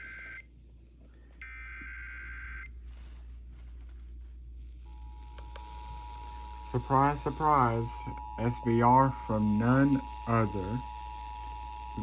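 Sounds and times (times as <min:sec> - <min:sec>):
buzzing data burst: 0:04.9 - 0:12.0.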